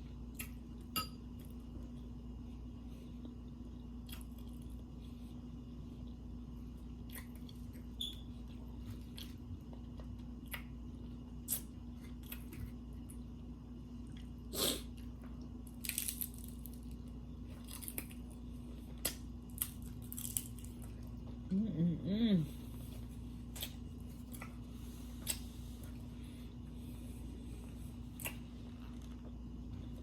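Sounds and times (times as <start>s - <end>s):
person chewing and crunching: 4.0s - 5.2s, 6.0s - 13.2s, 14.0s - 21.5s, 22.7s - 30.0s.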